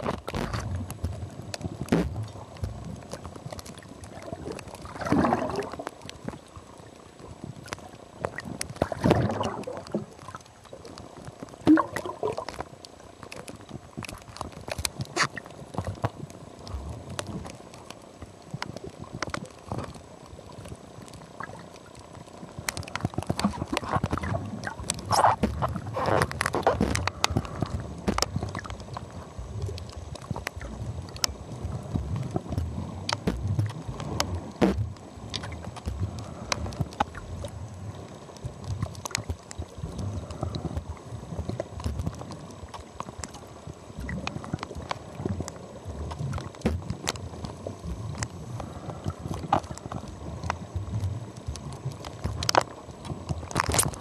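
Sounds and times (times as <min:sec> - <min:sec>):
water gurgling and sloshing: 0:00.0 - 0:54.0.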